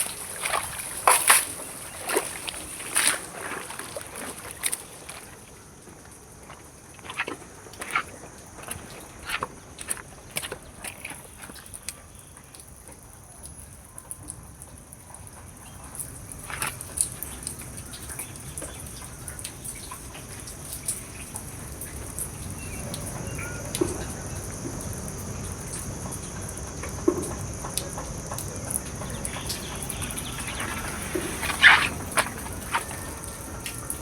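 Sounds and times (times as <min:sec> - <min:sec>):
short animal calls: 0:30.5 - 0:33.3.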